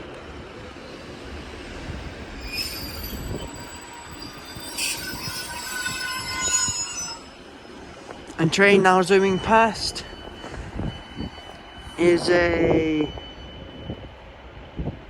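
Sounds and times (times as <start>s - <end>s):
train rumbling: 0.0s - 15.0s
train wheels squealing on rails: 0.0s - 15.0s.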